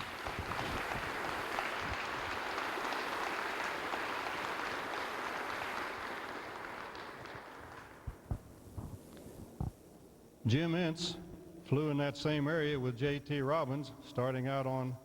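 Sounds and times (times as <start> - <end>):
audience applauding: 0.0 - 8.5.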